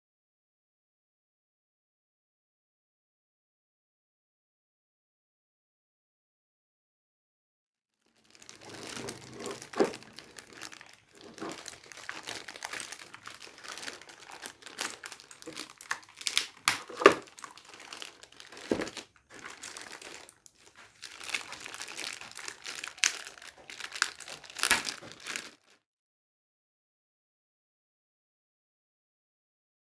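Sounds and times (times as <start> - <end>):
packaging rustling and crinkling: 8.2 - 25.8.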